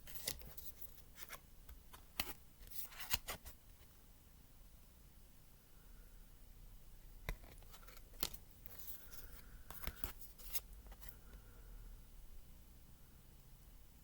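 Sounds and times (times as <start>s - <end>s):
cards tapping and clicking: 9.7s - 11.1s.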